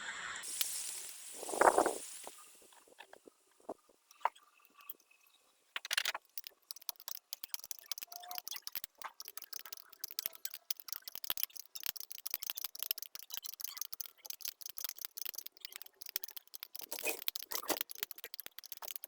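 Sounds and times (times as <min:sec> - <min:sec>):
rapid light clicks: 0:05.8 - 0:19.0.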